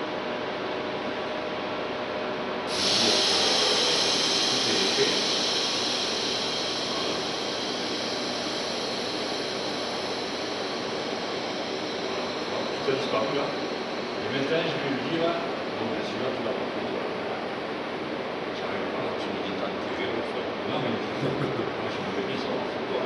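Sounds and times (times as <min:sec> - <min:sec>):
background machine noise: 0:00.0 - 0:23.0
loud hiss: 0:02.7 - 0:17.1.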